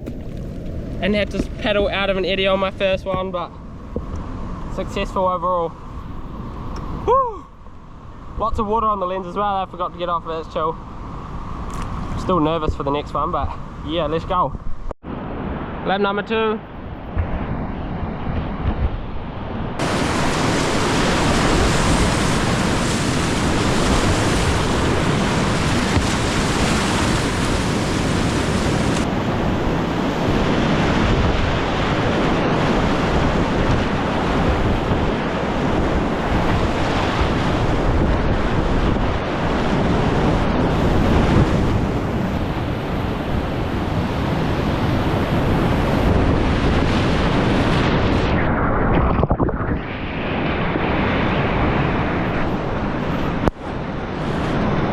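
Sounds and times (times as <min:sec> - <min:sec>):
wind buffeting microphone: 0:00.0 - 0:54.9
rushing whitewater: 0:19.8 - 0:29.1.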